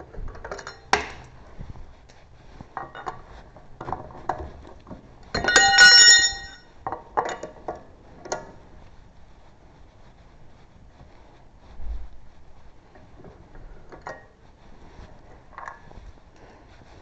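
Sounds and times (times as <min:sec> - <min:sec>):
metal tools clinking: 0:00.4 - 0:01.0, 0:05.4 - 0:07.5
ringing metallic clatter: 0:05.4 - 0:06.7.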